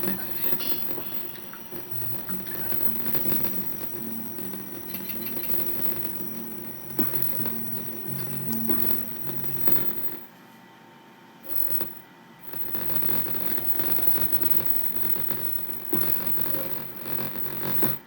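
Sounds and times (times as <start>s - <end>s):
static hiss: 0.0s - 10.3s, 11.4s - 18.0s
speaker buzzing hum: 0.0s - 10.4s, 11.4s - 18.0s.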